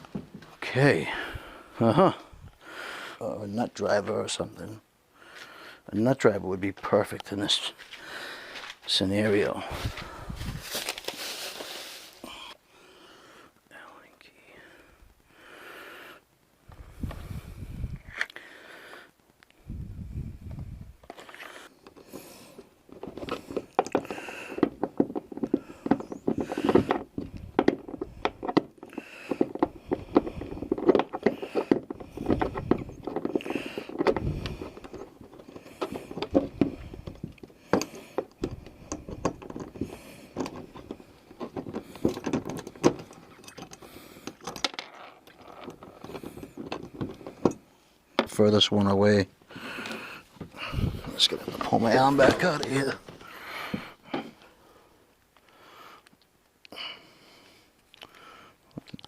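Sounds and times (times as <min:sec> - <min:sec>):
scraping: 0:07.1 - 0:12.4, 0:21.1 - 0:54.4.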